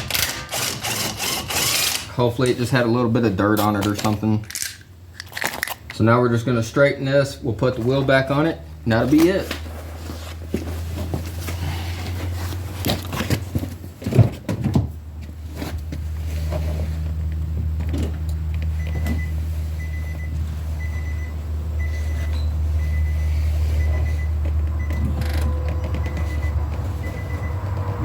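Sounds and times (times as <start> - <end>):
low hum: 14.9 - 28.0
high electronic beep: 19.2 - 27.6.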